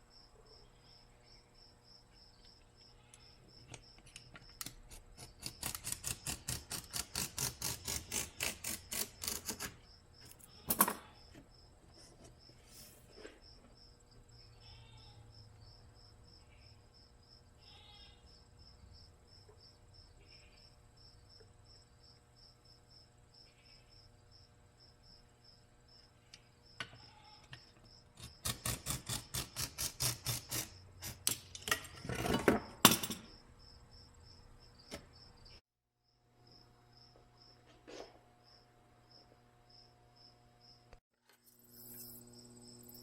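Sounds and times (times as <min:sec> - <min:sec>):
cricket chirping: 0:00.0 - 0:06.6, 0:13.2 - 0:28.5, 0:33.3 - 0:37.6, 0:38.4 - 0:43.0.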